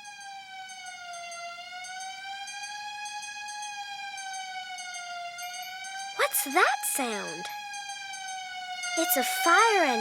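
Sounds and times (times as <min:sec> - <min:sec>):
fire engine siren wailing: 0:09.0 - 0:10.0.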